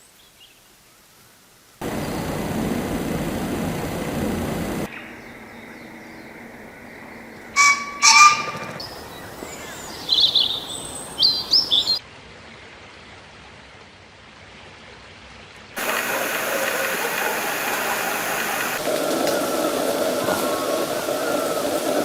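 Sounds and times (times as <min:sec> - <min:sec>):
background hiss: 0:00.0 - 0:07.6, 0:15.8 - 0:22.0
steady outdoor noise: 0:00.0 - 0:22.0
birds chirping: 0:01.8 - 0:12.0, 0:15.8 - 0:22.0.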